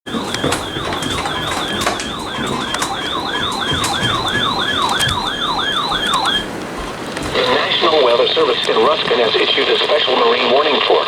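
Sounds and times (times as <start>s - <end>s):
electronic siren yelping: 0.0s - 8.7s
crackling clicks: 0.0s - 11.0s.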